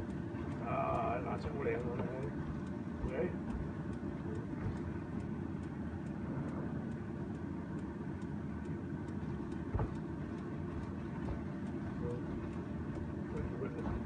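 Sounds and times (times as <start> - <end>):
low stove rumble: 0.0 - 14.0
sauce bubbling with light ticks: 0.0 - 14.0
low knock: 9.7 - 10.0.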